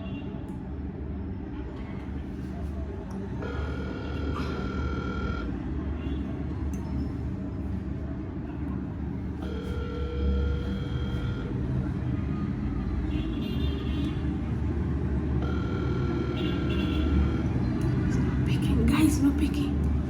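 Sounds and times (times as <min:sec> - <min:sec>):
phone ringback tone: 0:03.4 - 0:05.5, 0:09.4 - 0:11.7, 0:15.4 - 0:17.6.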